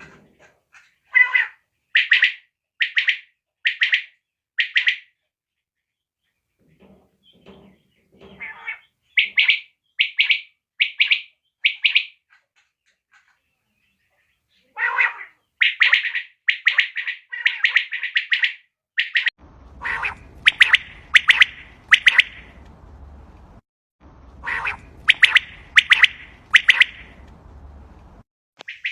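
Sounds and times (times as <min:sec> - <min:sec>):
quail calling: 0:00.7 - 0:05.1, 0:07.2 - 0:12.3, 0:14.5 - 0:22.6, 0:24.4 - 0:27.2, 0:28.6 - 0:28.9
hiss and low hum: 0:19.4 - 0:28.2.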